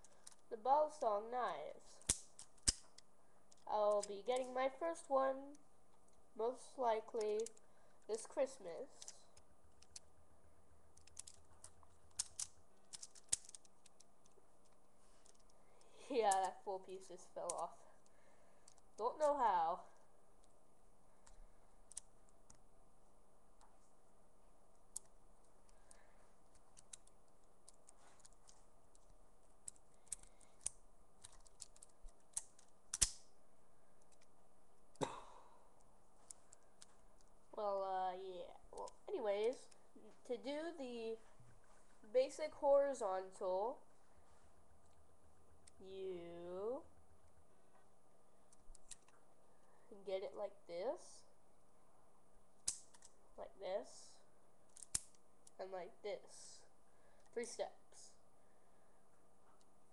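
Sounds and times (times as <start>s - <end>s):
plastic bricks clicking: 0.0s - 0.4s, 10.9s - 15.6s, 25.9s - 33.2s, 54.7s - 55.6s.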